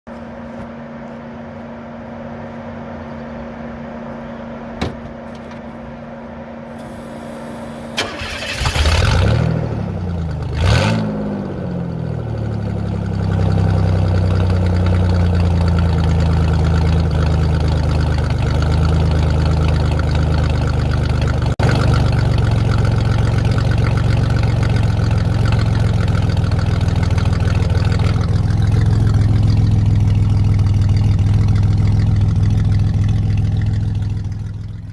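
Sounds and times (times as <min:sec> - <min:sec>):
low steady hum: 0:00.1 - 0:10.6, 0:11.4 - 0:34.9
loud car engine revving and idling: 0:06.8 - 0:20.4.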